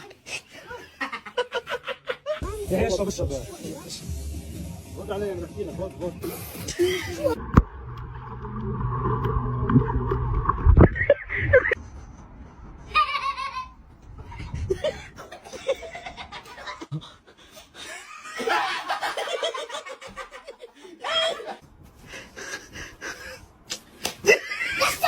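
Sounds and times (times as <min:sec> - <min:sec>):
people laughing and snickering: 0:00.2 - 0:02.6, 0:12.9 - 0:23.5, 0:24.1 - 0:25.0.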